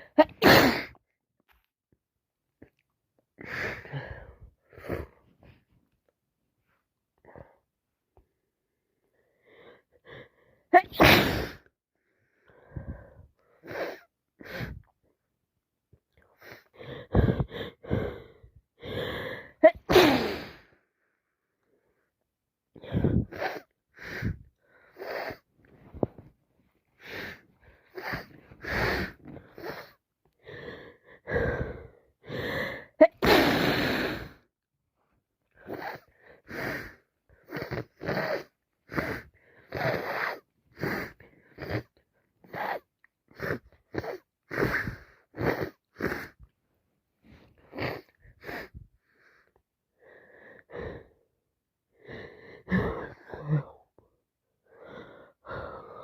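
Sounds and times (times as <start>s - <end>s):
woman sneezing: 0.0s - 1.0s, 10.8s - 11.6s, 19.6s - 20.5s, 33.0s - 34.0s
woman sniffling: 10.8s - 11.7s, 16.4s - 20.8s, 27.0s - 30.0s, 31.2s - 34.4s.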